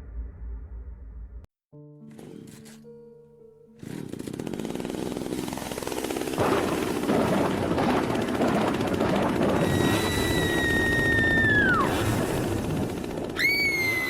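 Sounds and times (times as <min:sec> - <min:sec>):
low rumble: 0:00.0 - 0:01.5.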